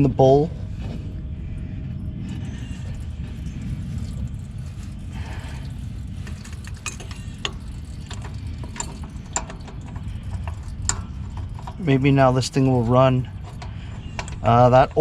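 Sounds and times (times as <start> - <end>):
steady low rumble: 0.0 - 15.0
metal fuel bowl clicks and taps: 6.2 - 14.9.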